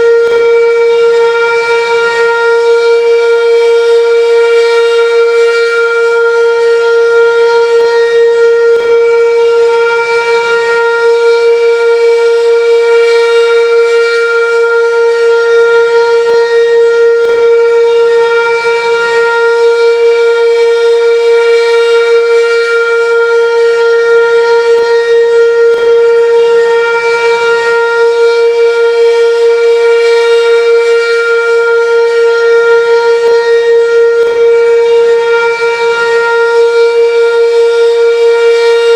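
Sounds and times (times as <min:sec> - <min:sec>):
warning siren steady tone: 0:00.0 - 0:38.9.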